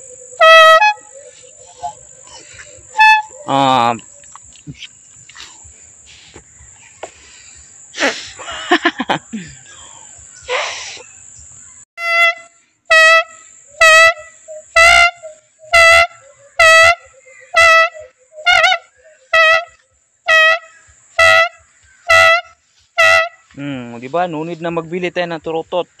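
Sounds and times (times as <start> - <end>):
homemade horn toots: 0.0 - 2.0, 2.6 - 4.0, 12.0 - 23.6.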